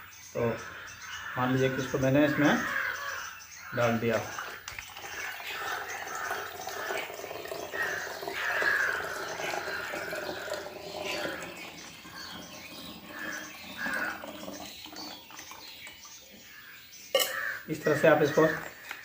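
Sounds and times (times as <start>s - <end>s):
liquid pouring into a bottle: 4.2s - 16.4s.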